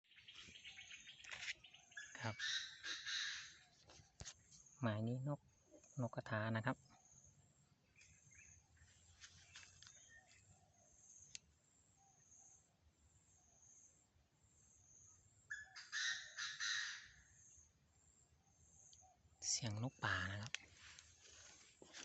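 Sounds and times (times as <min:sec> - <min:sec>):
bird harsh call: 0:02.0 - 0:03.6, 0:15.5 - 0:17.5.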